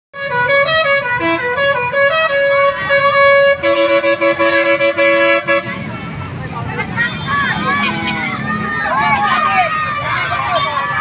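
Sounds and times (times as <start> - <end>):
musical air horns: 0.2 - 6.1.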